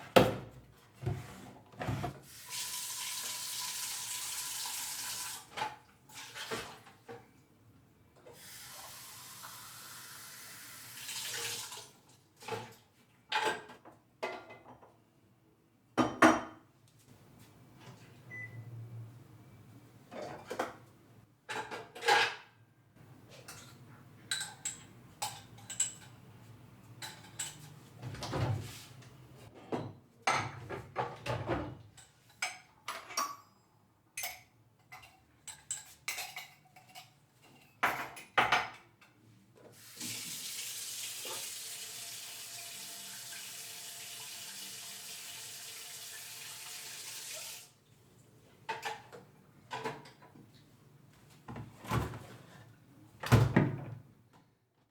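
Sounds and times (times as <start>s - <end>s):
dishes and cutlery clinking: 23.3s - 26.3s, 26.9s - 28.4s, 29.6s - 33.6s, 34.2s - 39.2s.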